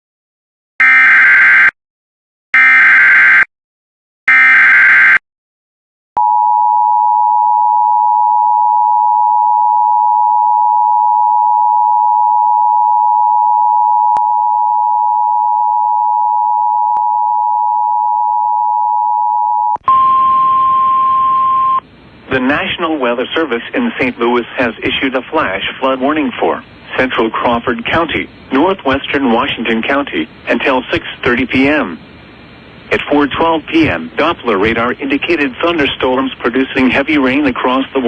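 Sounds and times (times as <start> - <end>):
two-tone alert signal: 19.8 - 21.8.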